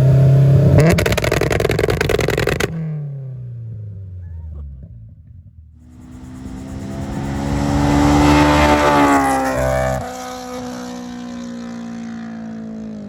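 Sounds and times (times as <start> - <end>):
car engine revving against limiter: 0.0 - 3.7, 5.8 - 12.2.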